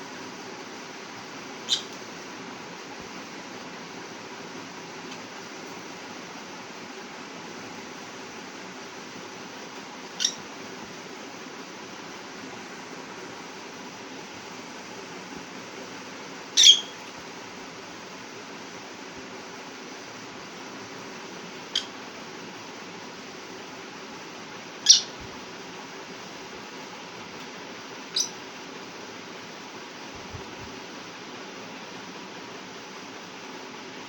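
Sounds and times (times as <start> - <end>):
steady hiss: 0.0 - 34.0
lovebirds chirping: 1.6 - 2.0, 10.0 - 10.5, 16.5 - 17.2, 21.6 - 22.0, 24.8 - 25.2, 28.0 - 28.5.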